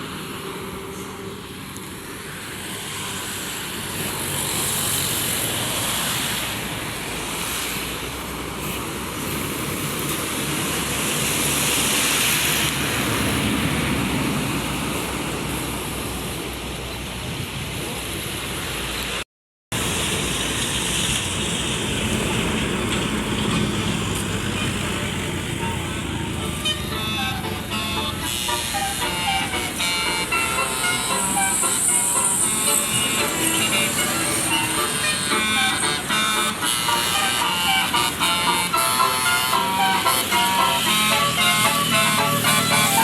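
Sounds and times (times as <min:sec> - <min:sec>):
bus and traffic engines: 0:00.0 - 0:43.0
steady rushing noise: 0:25.0 - 0:43.0.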